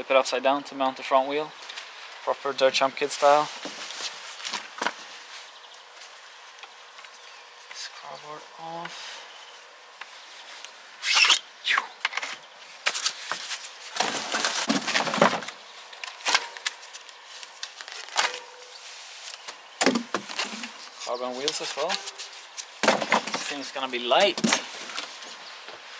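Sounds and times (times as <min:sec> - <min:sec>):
cardboard scraping and tearing: 0:12.8 - 0:15.5.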